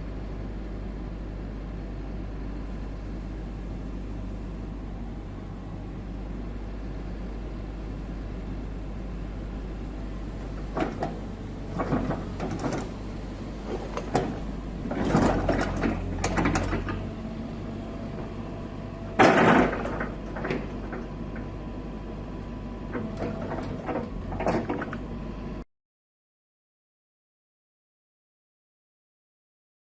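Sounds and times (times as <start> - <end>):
excavator diesel engine idling: 0.1 - 25.6
clunks and knocks: 10.4 - 25.1.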